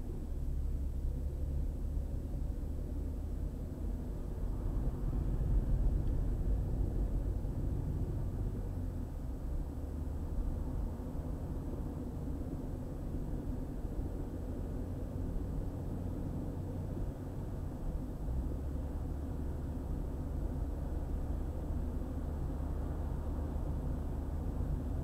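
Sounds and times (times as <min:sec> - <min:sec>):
car driving on highway: 0:00.0 - 0:25.0.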